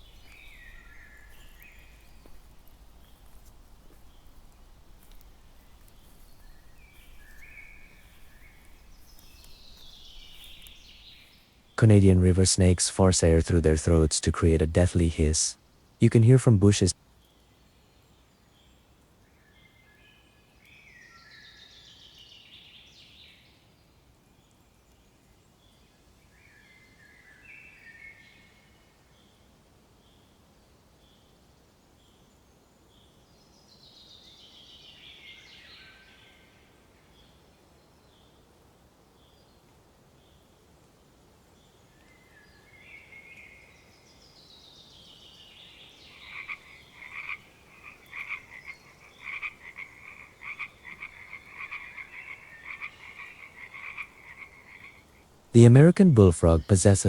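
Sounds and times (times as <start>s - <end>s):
frogs croaking: 0.0s - 11.3s, 45.5s - 57.0s
songbird singing: 0.0s - 18.8s, 31.9s - 38.4s, 41.6s - 57.0s
faint outdoor background: 0.0s - 57.0s.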